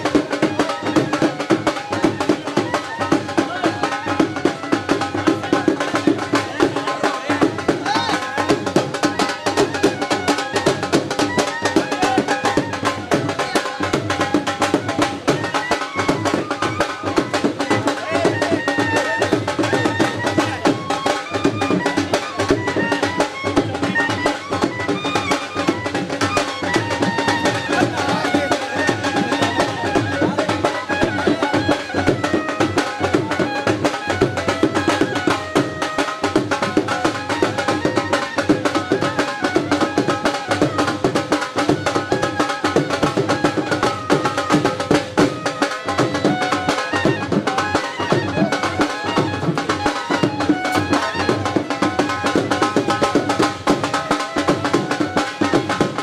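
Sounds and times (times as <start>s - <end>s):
fast traditional drumming: 0.0s - 56.0s
wavering melody: 0.0s - 56.0s.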